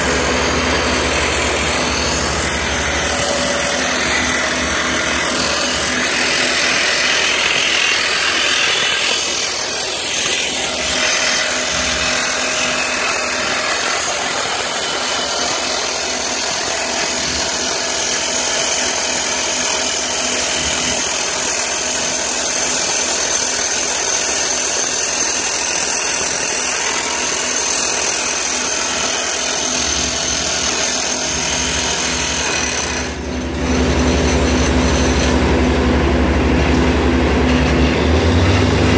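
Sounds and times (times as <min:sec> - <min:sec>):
hydraulic drill running: 0:00.0 - 0:38.9.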